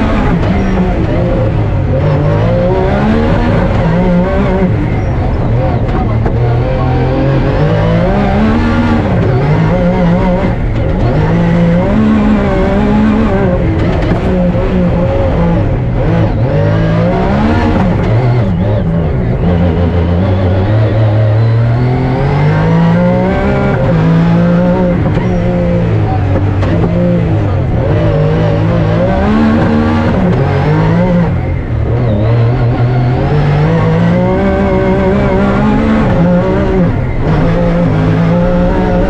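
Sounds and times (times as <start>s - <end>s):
rally car engine revving: 0.0s - 39.0s.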